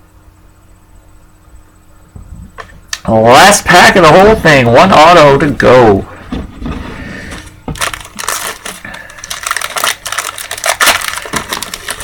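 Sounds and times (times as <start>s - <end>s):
card pack wrapper crinkling and tearing: 7.3s - 12.0s.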